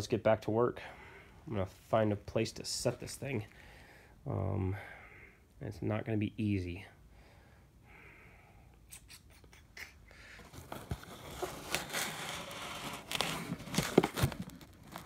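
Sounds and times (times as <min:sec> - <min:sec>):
phone handling rustling: 0:12.9 - 0:15.0.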